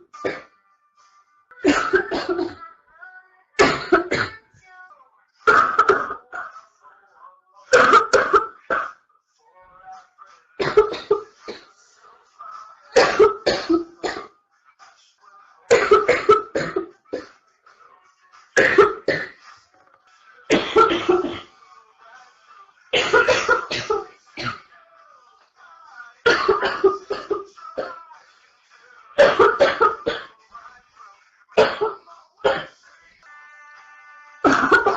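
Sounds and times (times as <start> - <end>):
woman coughing: 1.6 - 2.6, 3.6 - 4.4, 5.5 - 6.5, 7.7 - 9.0, 10.6 - 11.7, 13.0 - 14.3, 15.7 - 17.3, 18.6 - 19.4, 20.5 - 21.5, 23.0 - 24.6, 26.3 - 27.9, 29.2 - 30.3, 31.6 - 32.8, 34.4 - 34.9.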